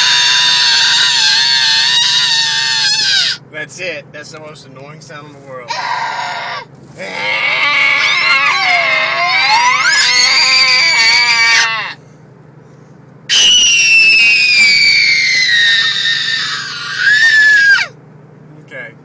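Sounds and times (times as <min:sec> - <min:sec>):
person screeching: 0:00.0 - 0:03.4, 0:05.7 - 0:12.0, 0:13.3 - 0:17.9.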